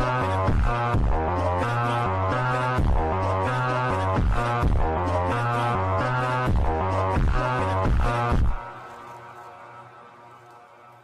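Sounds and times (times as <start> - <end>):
electronic music with heavy bass: 0.0 - 8.7.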